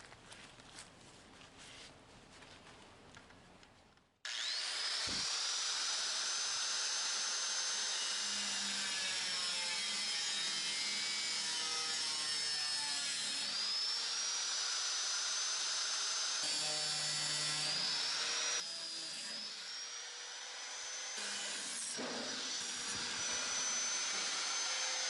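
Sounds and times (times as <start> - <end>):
power tool motor whine: 4.3 - 11.2, 13.5 - 25.0.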